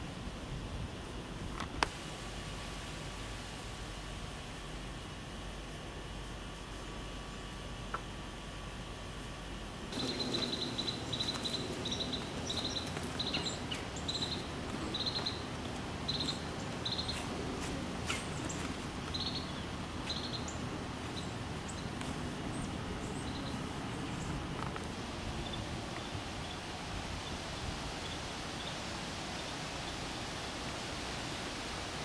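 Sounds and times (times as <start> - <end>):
bird chirping: 9.9 - 24.5.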